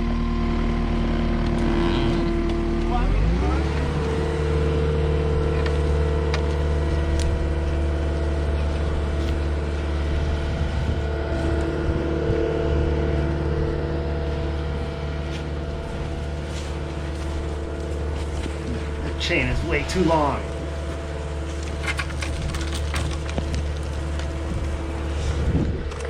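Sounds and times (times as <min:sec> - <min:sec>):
loader engine drone: 0:00.0 - 0:26.0
logs dragging through snow: 0:01.6 - 0:26.0.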